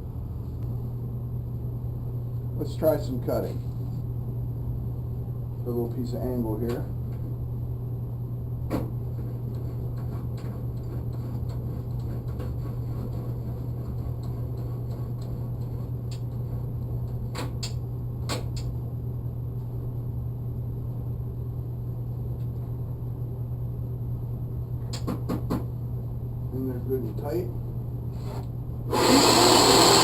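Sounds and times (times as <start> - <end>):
band saw motor humming: 28.9 - 30.0.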